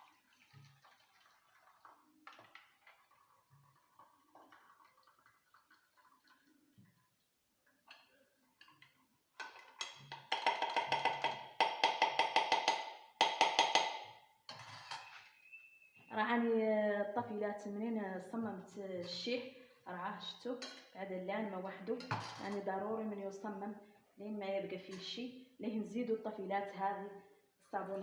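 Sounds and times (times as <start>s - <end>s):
metal utensil scraping pot: 14.5s - 15.4s.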